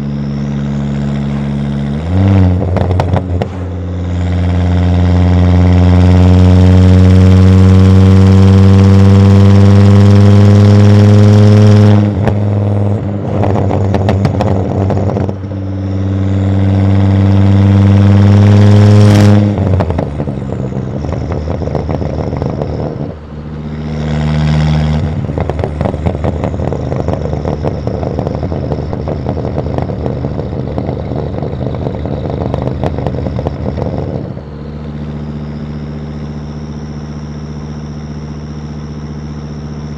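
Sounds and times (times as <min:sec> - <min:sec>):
car engine revving and crackling: 0:00.0 - 0:39.9.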